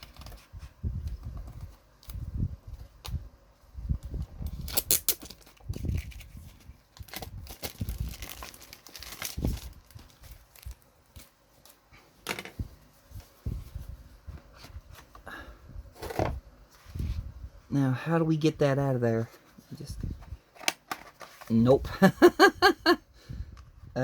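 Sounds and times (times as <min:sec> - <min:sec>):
packaging torn and crinkled: 0:04.5 - 0:11.3.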